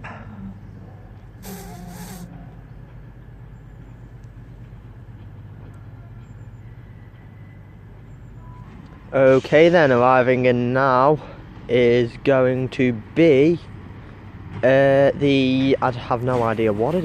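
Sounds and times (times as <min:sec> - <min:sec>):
diesel train engine idling: 0:00.0 - 0:09.2
air hiss: 0:01.4 - 0:02.3.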